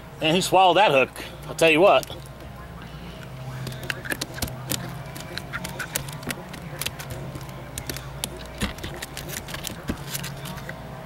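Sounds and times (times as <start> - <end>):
steady low hum: 0.0 - 11.0
clicks and taps handling fish: 3.2 - 10.8.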